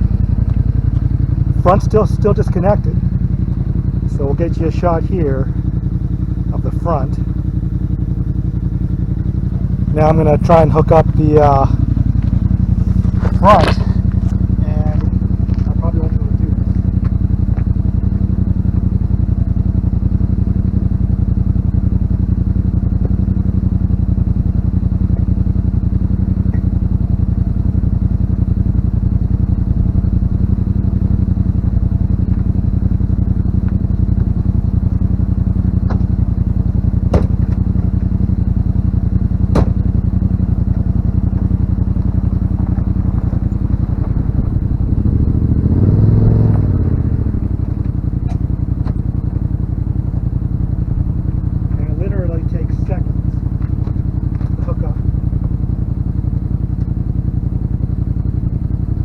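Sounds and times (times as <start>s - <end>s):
vehicle engine idling: 0.0s - 59.0s.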